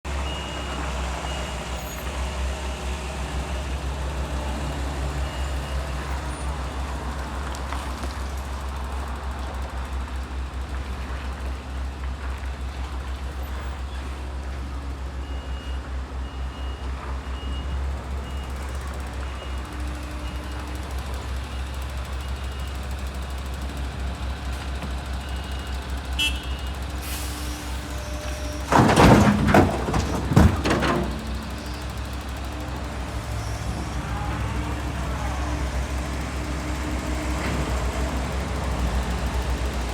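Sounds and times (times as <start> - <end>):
diesel engine running: 17.8 - 39.9.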